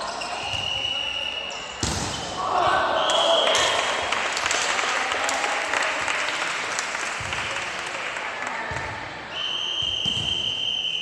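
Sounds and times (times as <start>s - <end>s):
spectators clapping and cheering: 3.2s - 9.2s
referee whistle blast: 9.3s - 11.0s.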